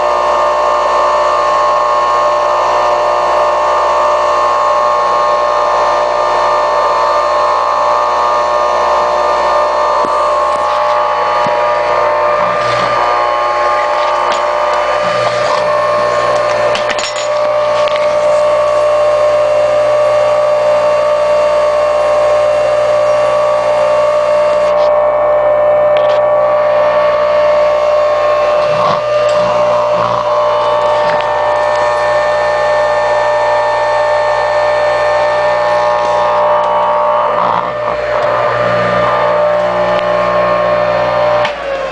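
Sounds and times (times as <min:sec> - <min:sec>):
electric motor whining: 0:00.0 - 0:41.9.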